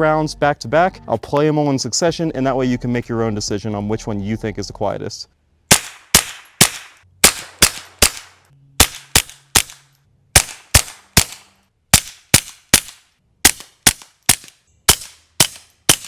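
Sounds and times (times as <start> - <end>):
suppressed gunshots: 5.7 - 16.0.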